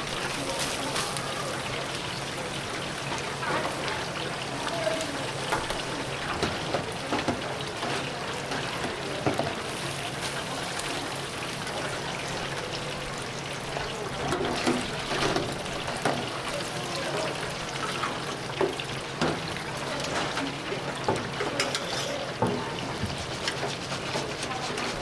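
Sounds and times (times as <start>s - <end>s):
chicken sizzling in hot oil: 0.0s - 25.0s
metal utensils clinking: 21.4s - 22.3s.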